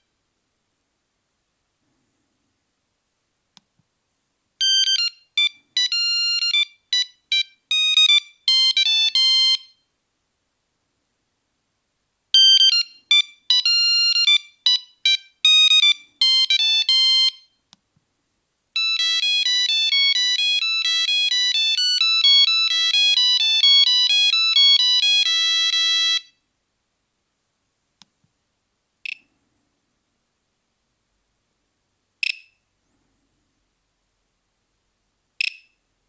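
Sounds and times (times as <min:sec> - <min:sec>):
monophonic phone ringtone: 0:04.6 - 0:09.8, 0:12.4 - 0:17.5, 0:18.8 - 0:26.4.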